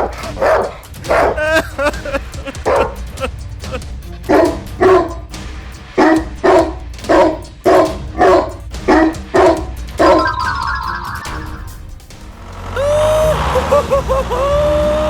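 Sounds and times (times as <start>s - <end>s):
dog barking: 0.0s - 1.4s, 2.7s - 3.0s, 4.3s - 5.2s, 6.0s - 10.4s
background music: 0.0s - 15.0s.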